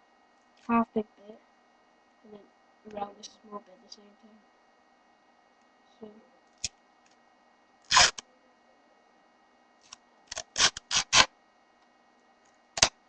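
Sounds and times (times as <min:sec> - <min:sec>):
tape ripping off roll: 0:07.9 - 0:08.2, 0:10.3 - 0:11.3.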